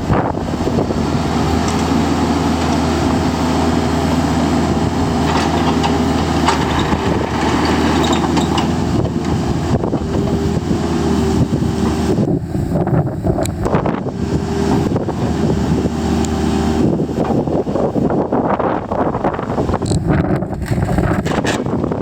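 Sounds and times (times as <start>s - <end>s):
diesel engine idling: 0.0s - 20.2s.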